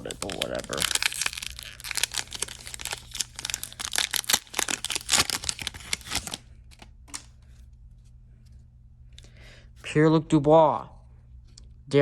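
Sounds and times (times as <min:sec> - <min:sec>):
foil wrapper tearing and crinkling: 0:00.0 - 0:06.8.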